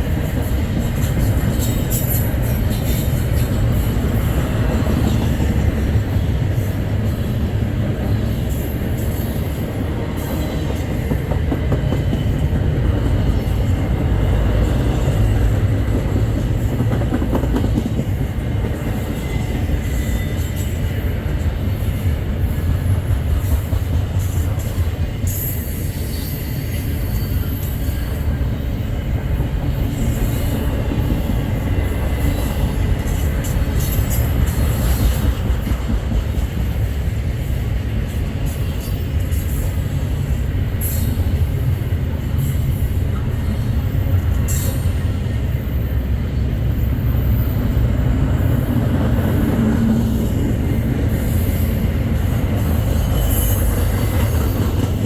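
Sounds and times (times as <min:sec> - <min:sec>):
wheels clicking over rail joints: 0:00.0 - 0:25.6, 0:29.4 - 0:37.5
freight train rumbling past: 0:00.0 - 0:55.0
high wheel squeal: 0:52.6 - 0:54.6.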